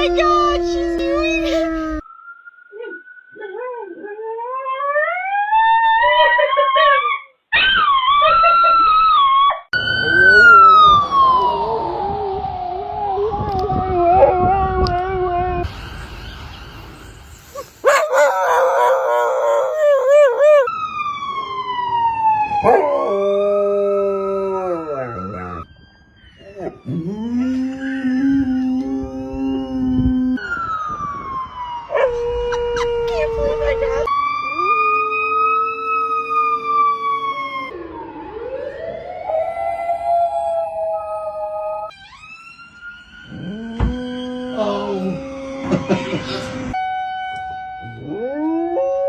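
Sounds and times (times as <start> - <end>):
dog howling: 0.0 - 2.0, 17.5 - 20.7, 31.9 - 37.7
siren wailing: 0.0 - 6.9, 7.8 - 15.7, 17.5 - 49.0.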